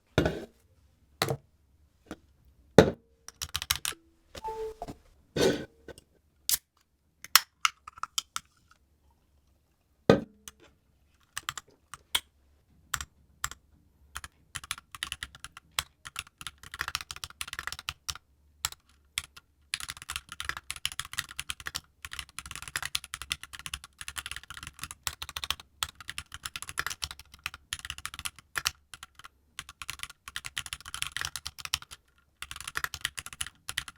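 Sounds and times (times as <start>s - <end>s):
mechanical keyboard typing: 3.3s - 4.8s, 11.3s - 11.6s, 14.2s - 33.9s.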